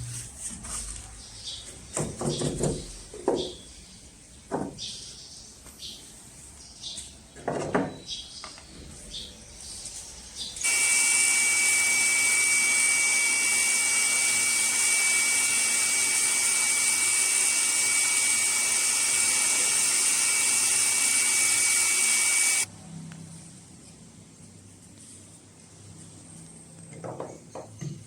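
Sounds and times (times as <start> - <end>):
power tool whining: 10.6 - 22.7.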